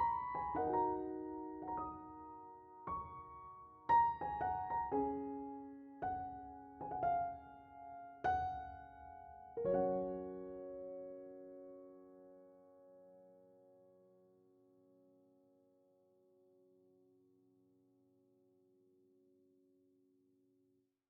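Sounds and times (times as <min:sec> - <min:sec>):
slow solo piano: 0:00.0 - 0:14.2.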